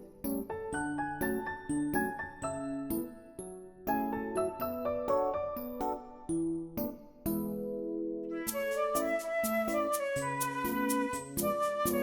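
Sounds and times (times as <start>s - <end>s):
light melody over steady beat: 8.3s - 12.0s.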